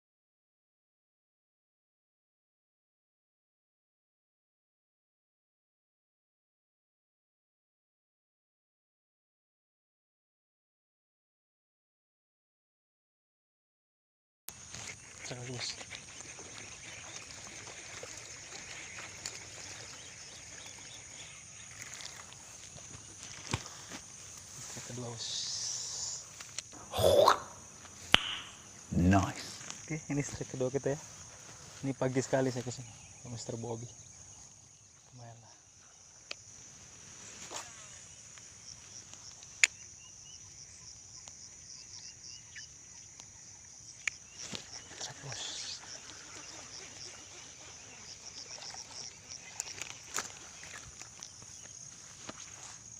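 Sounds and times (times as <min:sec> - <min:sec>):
faint ticks and rustles: 0:14.5 - 0:26.8, 0:29.2 - 0:52.9
high-pitched insect drone: 0:14.8 - 0:35.0
short chirps: 0:26.9 - 0:28.6
sharp clicks: 0:28.1 - 0:28.6.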